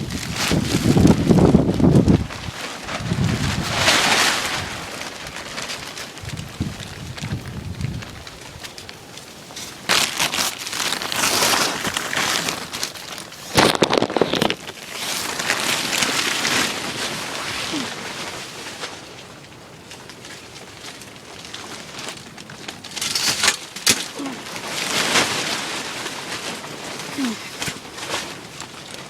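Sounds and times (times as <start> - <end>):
hard wind gusting: 0.0 - 5.6, 6.2 - 8.6.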